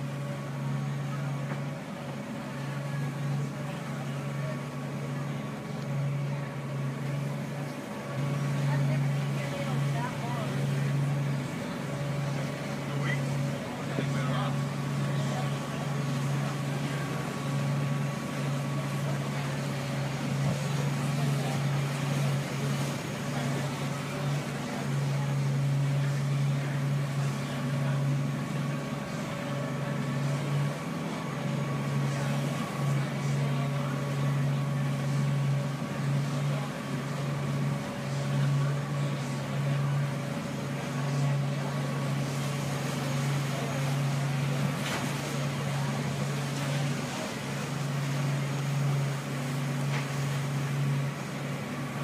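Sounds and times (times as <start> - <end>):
boat engine droning: 0.0 - 52.0.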